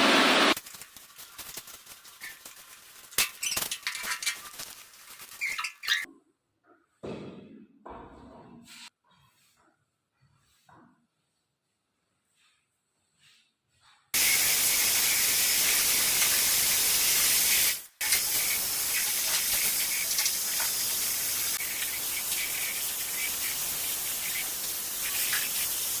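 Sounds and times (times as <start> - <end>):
steady hissing rush: 14.2 - 26.0.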